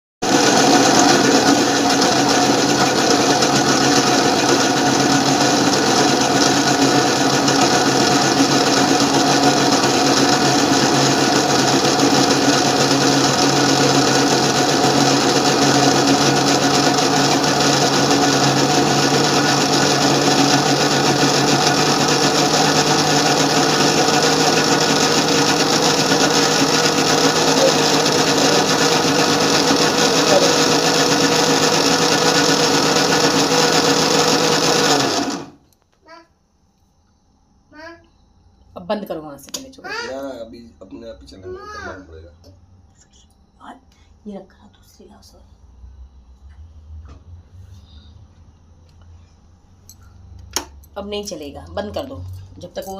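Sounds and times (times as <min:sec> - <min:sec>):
mixer grinder motor whirring: 0:00.2 - 0:35.6.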